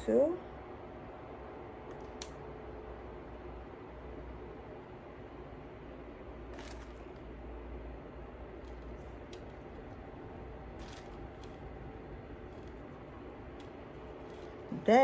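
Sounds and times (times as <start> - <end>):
low hum and hiss: 0.0 - 15.0
seed beads clicking: 6.5 - 7.3, 8.6 - 14.9.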